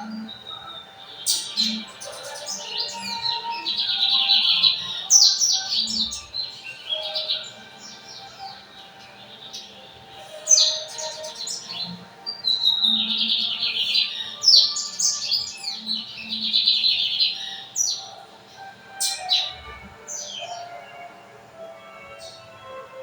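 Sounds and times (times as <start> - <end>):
bird buzzy trilled song: 0.0 - 23.0
bird short sharp notes: 19.0 - 20.7.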